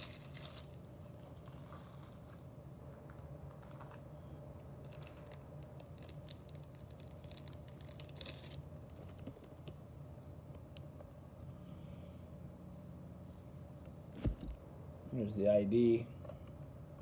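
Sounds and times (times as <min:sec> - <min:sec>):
steady low hum: 0:00.0 - 0:17.0
plastic packaging clicking: 0:04.9 - 0:08.6.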